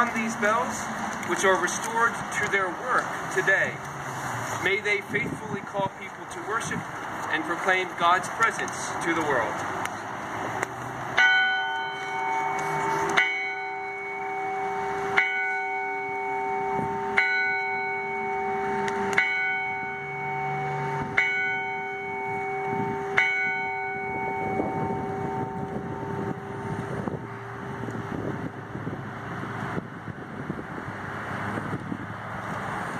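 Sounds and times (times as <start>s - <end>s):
church bell ringing: 11.2s - 27.8s.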